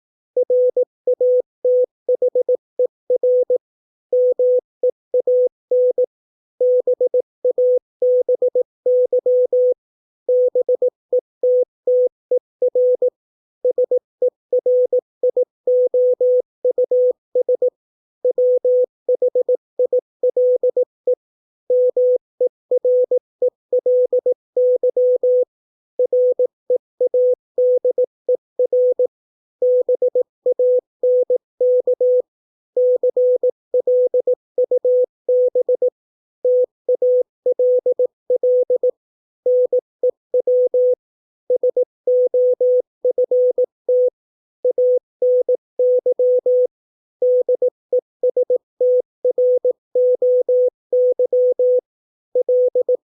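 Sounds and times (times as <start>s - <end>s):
morse code beeps: 36.5s - 38.9s, 39.5s - 53.0s.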